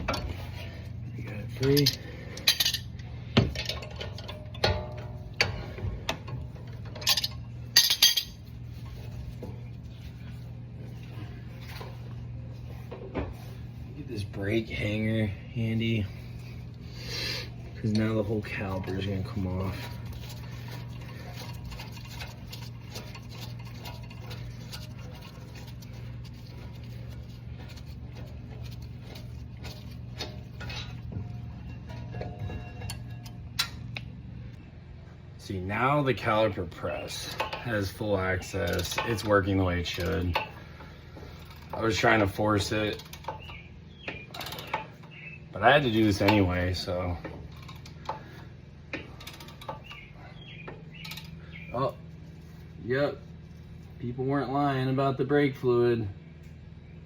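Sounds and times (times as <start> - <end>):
steady low hum: 0.0 - 57.0
metallic clinks and rattles: 1.5 - 5.4, 6.5 - 8.5, 18.9 - 34.0, 45.9 - 48.4, 49.0 - 51.4.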